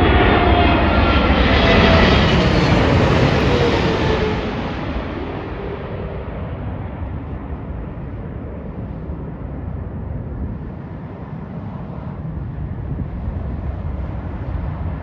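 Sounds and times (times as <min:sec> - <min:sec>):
jet engine rumble: 0:00.0 - 0:15.0.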